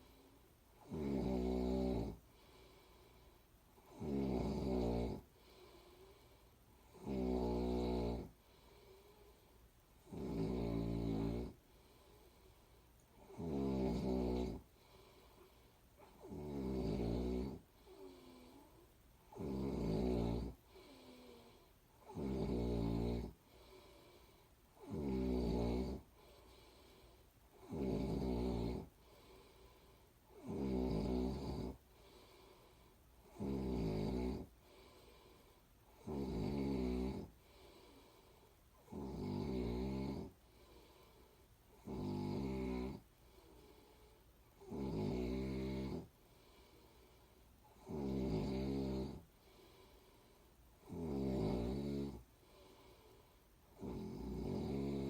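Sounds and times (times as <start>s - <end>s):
faint breathing: 0.0s - 0.7s, 2.0s - 3.9s, 5.1s - 6.9s, 8.2s - 10.0s, 11.4s - 13.4s, 14.4s - 16.3s, 17.5s - 19.3s, 20.5s - 22.0s, 23.2s - 24.8s, 26.0s - 27.6s, 28.8s - 30.4s, 31.7s - 33.3s, 34.4s - 36.1s, 37.2s - 39.0s, 40.2s - 41.9s, 43.0s - 44.7s, 46.0s - 47.9s, 49.1s - 50.8s, 52.1s - 55.0s
person snoring: 0.0s - 3.2s, 3.8s - 9.4s, 10.0s - 12.4s, 13.2s - 50.2s, 50.8s - 55.0s.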